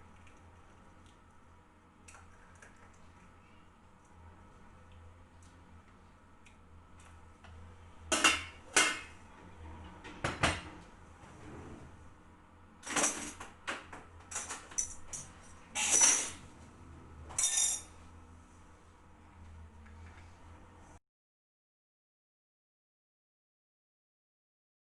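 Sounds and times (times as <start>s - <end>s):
dishes and cutlery clattering: 14.3s - 16.4s, 17.3s - 17.9s.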